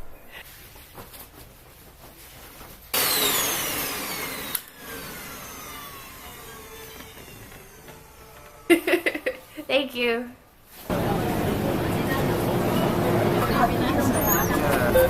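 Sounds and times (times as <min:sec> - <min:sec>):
motor click: 0:03.0 - 0:08.8
electric motor whirring: 0:03.0 - 0:09.5.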